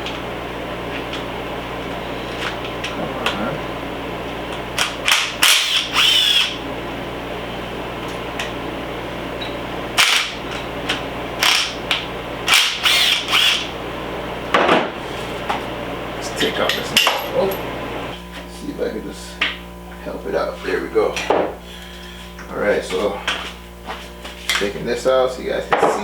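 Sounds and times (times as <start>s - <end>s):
steady low hum: 0.0s - 26.0s
power tool driving bolts: 4.8s - 6.6s, 10.0s - 10.4s, 11.4s - 11.8s, 12.5s - 13.7s.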